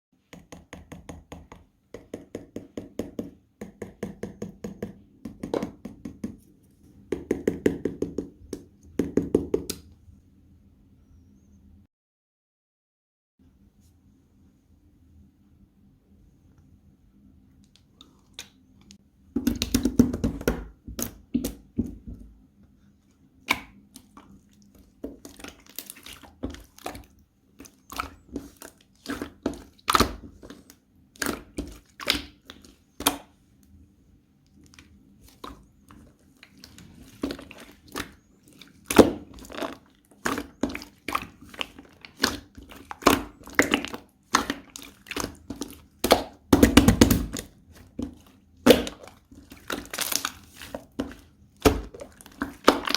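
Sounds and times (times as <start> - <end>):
slime squished by hand: 34.6 - 52.9
popping and crackling slime: 38.8 - 52.9.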